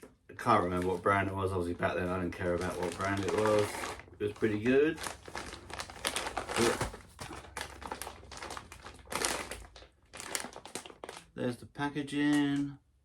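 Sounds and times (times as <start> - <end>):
plastic packaging crinkling: 0.4 - 11.4.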